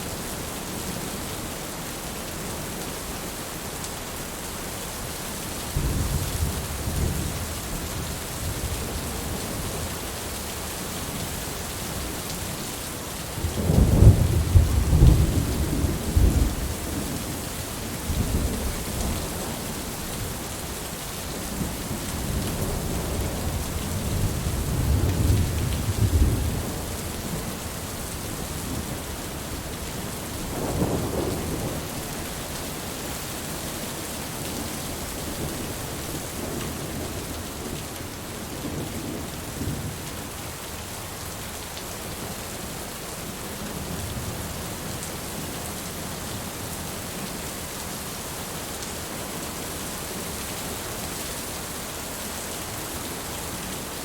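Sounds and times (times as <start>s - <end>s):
heavy rain: 0.0s - 54.0s
rolling thunder: 13.4s - 17.0s.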